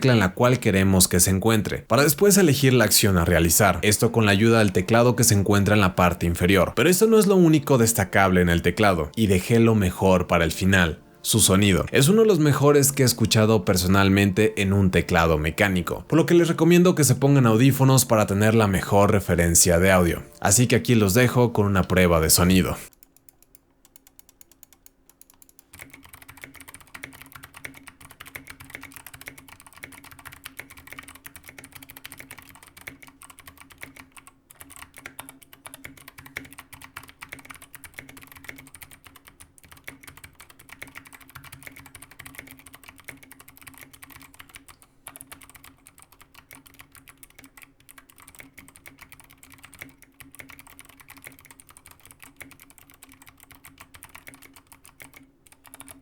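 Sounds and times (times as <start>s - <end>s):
fast typing on clicky keyboard: 0.0s - 56.0s.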